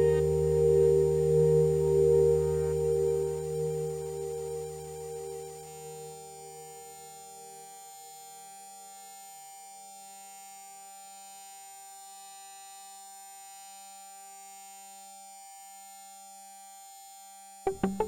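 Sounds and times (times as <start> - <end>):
thin high-pitched whine: 0.0 - 7.4
electronic drone of held tones: 0.0 - 8.3, 17.7 - 18.0.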